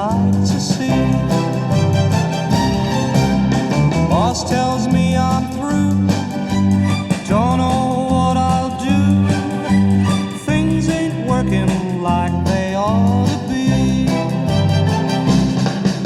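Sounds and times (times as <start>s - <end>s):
guitar: 0.0s - 16.0s
pop instrumental with strings: 0.0s - 16.0s
repeating bass line: 0.0s - 16.0s
gliding lead melody: 1.0s - 8.1s, 9.0s - 10.6s, 13.9s - 16.0s.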